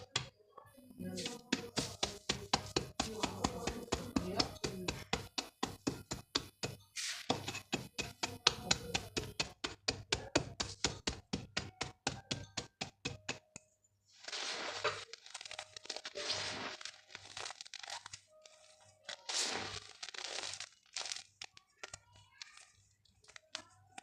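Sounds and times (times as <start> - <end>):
sharp taps and clicks: 1.2 - 13.7
dried mud crunching and crumbling: 14.1 - 22.0.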